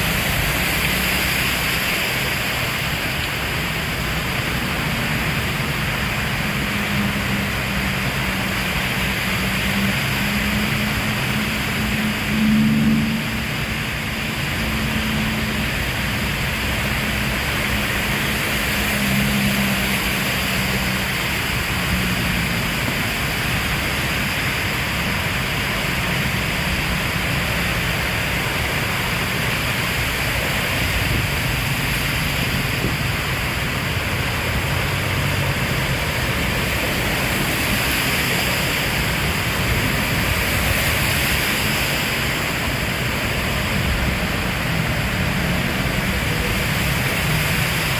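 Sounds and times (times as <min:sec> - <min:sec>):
heavy rain falling: 0:00.0 - 0:47.9.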